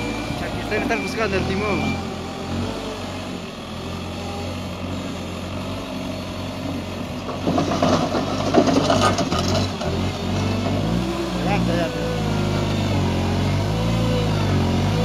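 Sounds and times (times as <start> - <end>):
busy machine noise: 0.0 - 3.3, 14.3 - 15.0
diesel engine idling: 0.0 - 15.0.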